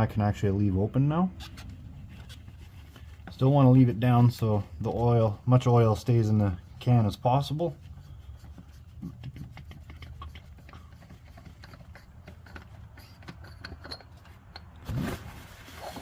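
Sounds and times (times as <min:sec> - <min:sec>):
hands clicking on hose fittings: 0:08.5 - 0:14.7.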